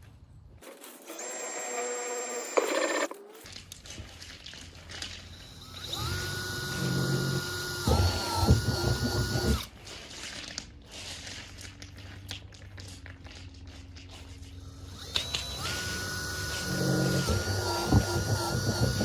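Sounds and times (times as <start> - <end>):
drill bit grinding: 1.1 - 3.1, 5.4 - 9.7, 14.6 - 19.0
power drill boring: 1.1 - 3.1, 5.4 - 9.7, 14.6 - 19.0.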